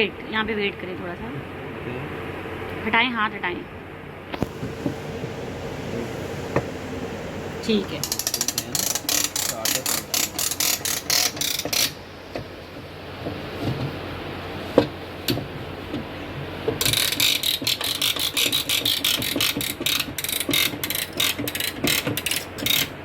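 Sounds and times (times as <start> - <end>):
strap tensioner ratchet clicks: 8.0 - 12.0, 16.8 - 23.0.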